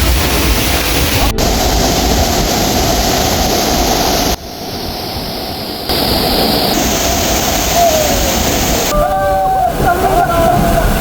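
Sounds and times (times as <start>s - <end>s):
waterfall roaring: 0.0s - 11.0s.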